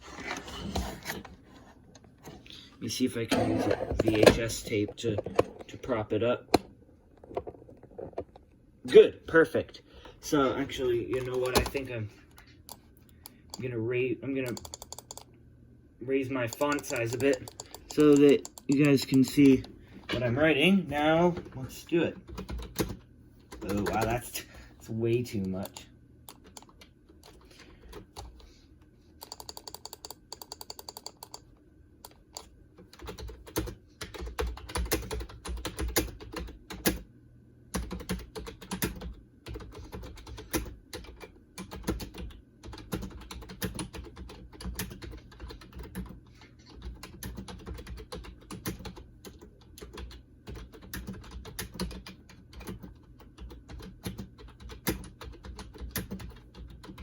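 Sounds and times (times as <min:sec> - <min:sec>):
keyboard typing: 0:11.0 - 0:11.9, 0:14.4 - 0:15.3, 0:16.4 - 0:20.3, 0:22.3 - 0:24.2, 0:25.3 - 0:28.4, 0:29.2 - 0:37.0, 0:37.8 - 0:57.0.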